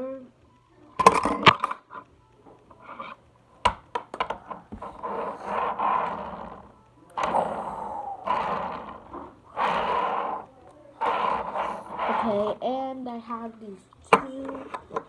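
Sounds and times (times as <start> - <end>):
rustling and scraping: 1.0 - 12.7.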